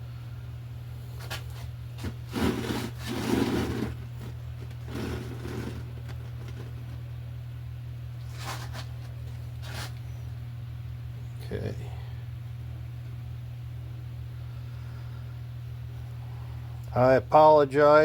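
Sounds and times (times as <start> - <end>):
steady low hum: 0.0 - 18.0
rubbing and scraping: 1.2 - 7.0, 8.2 - 10.0.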